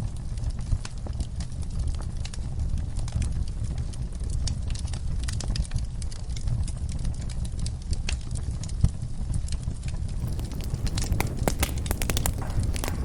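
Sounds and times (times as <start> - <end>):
fire crackling in a fireplace: 10.1 - 13.0.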